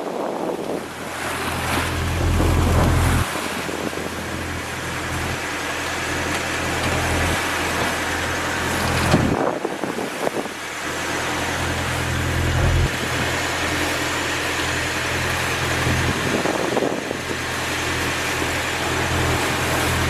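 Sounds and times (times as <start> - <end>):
low rumble: 0.9 - 5.6, 11.0 - 13.9.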